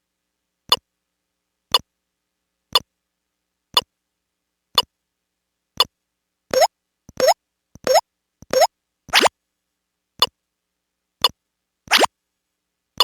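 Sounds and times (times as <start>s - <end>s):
electronic toy ticks: 6.5s - 9.3s, 11.2s - 12.1s.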